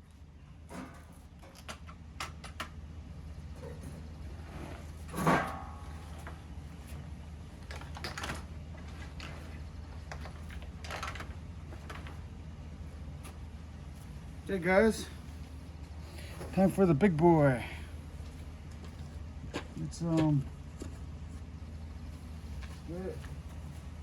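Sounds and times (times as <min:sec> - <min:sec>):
low steady hum: 0:00.0 - 0:24.0
loud clunk: 0:05.1 - 0:06.0.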